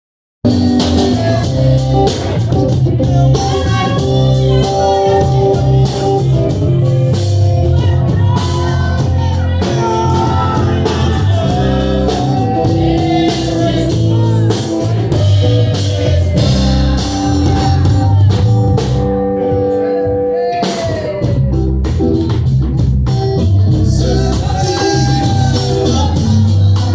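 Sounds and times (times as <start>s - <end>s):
band playing: 0.4s - 26.9s.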